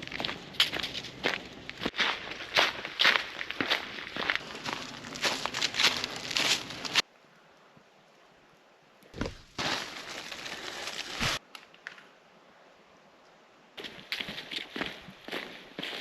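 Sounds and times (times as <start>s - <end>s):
footsteps on rocky leafy trail: 0.0s - 7.0s, 9.2s - 11.4s, 13.8s - 16.0s.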